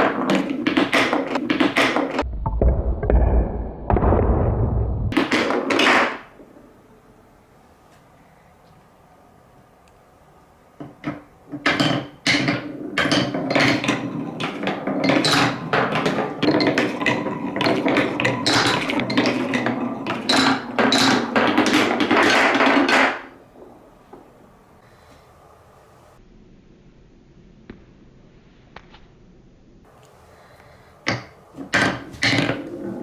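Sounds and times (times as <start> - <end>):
balls clattering down marble run: 11.0 - 23.4.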